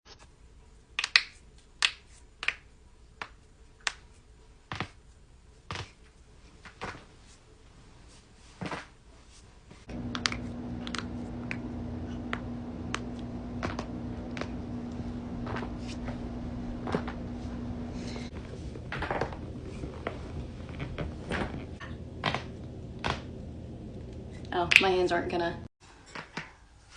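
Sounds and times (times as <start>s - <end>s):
steady low hum: 9.8s - 25.7s.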